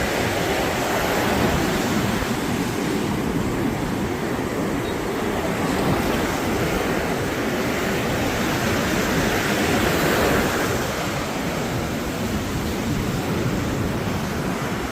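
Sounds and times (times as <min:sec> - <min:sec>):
ocean surf breaking on beach: 0:00.0 - 0:14.9.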